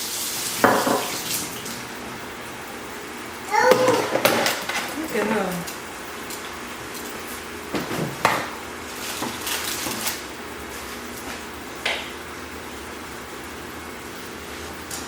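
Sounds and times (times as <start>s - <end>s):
pots and pans clattering: 0.6s - 1.2s, 3.7s - 5.4s.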